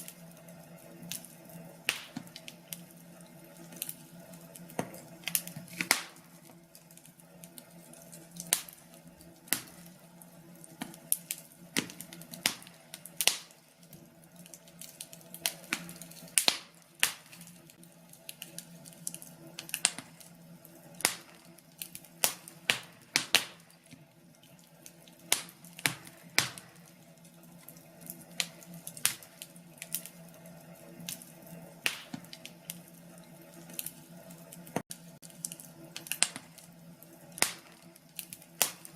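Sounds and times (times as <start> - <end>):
faint steady hum: 0.0 - 38.9
wood fire crackling: 0.0 - 38.9.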